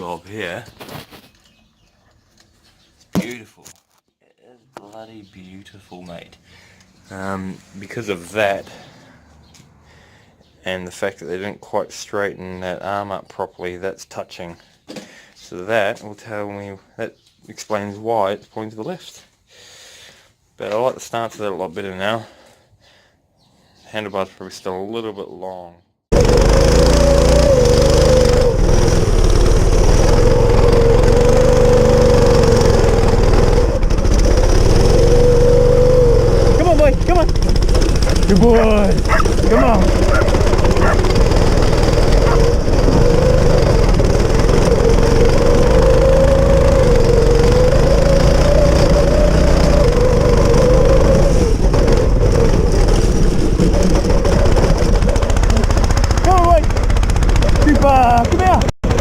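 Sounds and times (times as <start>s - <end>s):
go-kart engine running: 26.1s - 59.0s.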